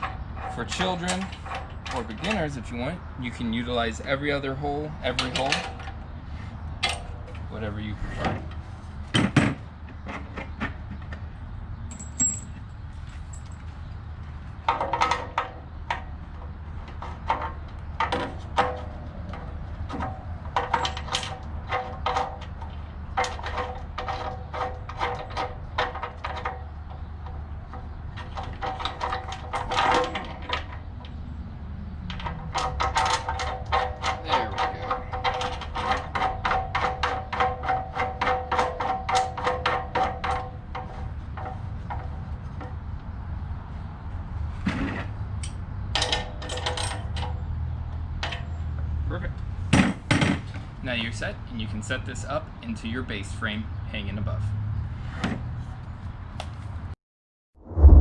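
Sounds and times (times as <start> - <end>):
metal clinks of nuts and wrench: 11.9 - 12.7.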